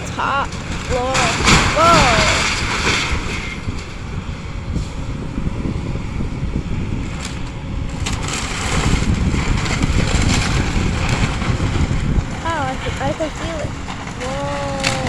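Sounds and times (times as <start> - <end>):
timber and debris cracking: 0.0 - 4.1, 7.2 - 15.0
excavator rumbling: 0.0 - 15.0.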